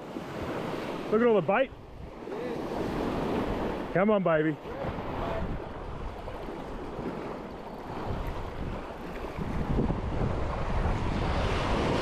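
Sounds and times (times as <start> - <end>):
surf on a beach: 0.0 - 12.0
wind buffeting microphone: 4.6 - 12.0.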